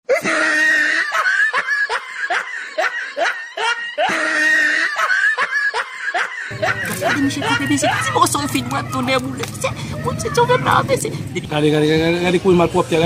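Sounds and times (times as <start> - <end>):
high-pitched laughter: 0.1 - 8.6.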